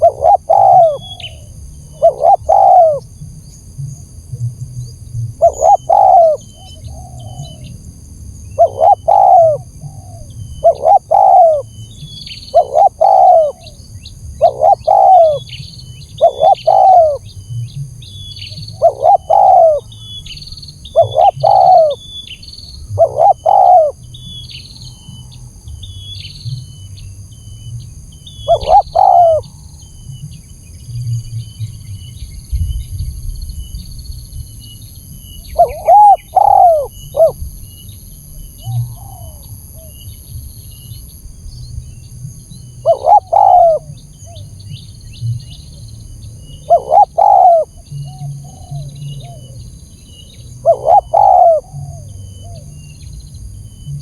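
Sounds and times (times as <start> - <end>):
dove cooing: 0.0 - 3.1, 5.4 - 7.8, 8.5 - 13.8, 14.4 - 17.3, 18.4 - 20.0, 20.9 - 22.0, 22.9 - 24.1, 28.4 - 29.6, 35.5 - 37.4, 38.6 - 40.0, 42.7 - 44.8, 46.4 - 49.7, 50.5 - 53.0
small birds chirping: 0.0 - 54.0.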